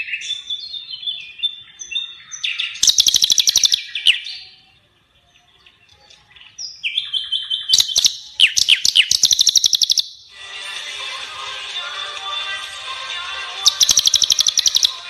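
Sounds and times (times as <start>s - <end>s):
songbird singing sharp notes: 0.0s - 10.3s, 13.6s - 15.0s.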